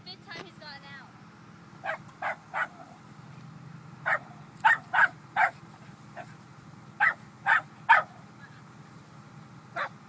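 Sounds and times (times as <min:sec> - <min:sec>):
steady low hum: 0:00.0 - 0:10.0
dog barking: 0:01.8 - 0:02.9, 0:04.0 - 0:05.6, 0:07.0 - 0:08.2, 0:09.8 - 0:10.0.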